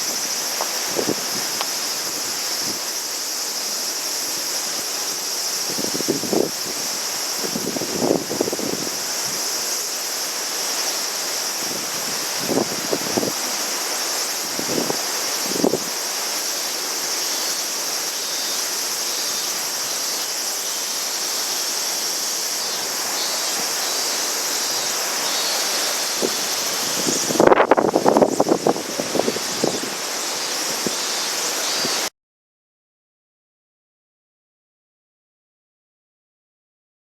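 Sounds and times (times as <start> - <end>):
strong wind on microphone: 0.0 - 3.0, 4.2 - 9.7, 11.5 - 16.0, 22.8 - 32.1.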